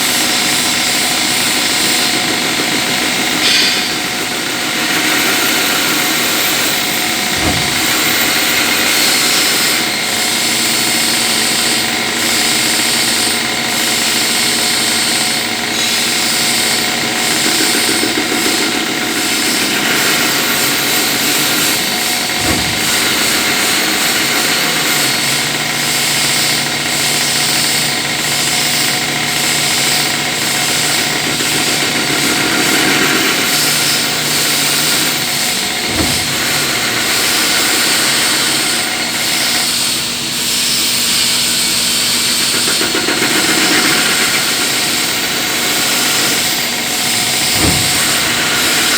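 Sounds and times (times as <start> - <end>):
lathe mechanical hum: 0.0 - 48.9
short knocks: 7.2 - 9.4, 21.6 - 25.2, 35.6 - 37.6, 47.1 - 48.9.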